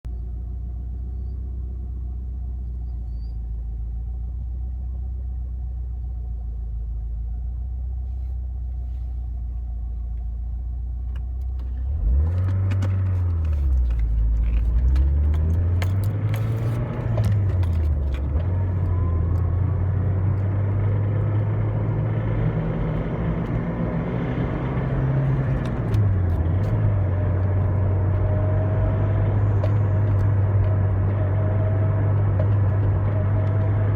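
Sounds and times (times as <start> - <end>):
turbo car engine revving: 11.7 - 33.9.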